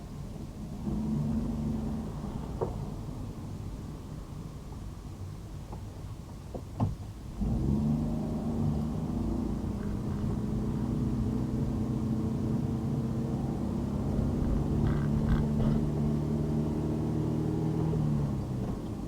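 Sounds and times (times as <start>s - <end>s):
car engine hum: 7.3s - 19.0s
road noise: 7.4s - 19.0s.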